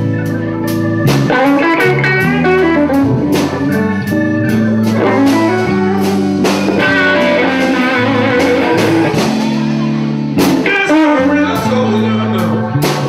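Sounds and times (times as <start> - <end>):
bass notes: 0.0 - 13.0
lead guitar fills: 0.0 - 13.0
person singing: 3.5 - 13.0
drum hits: 4.9 - 11.0.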